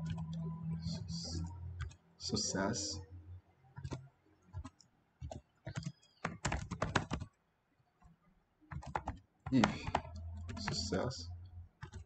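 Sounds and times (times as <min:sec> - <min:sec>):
typing on computer keyboard: 0:00.0 - 0:02.0, 0:03.8 - 0:07.4, 0:08.7 - 0:11.1, 0:11.8 - 0:12.0.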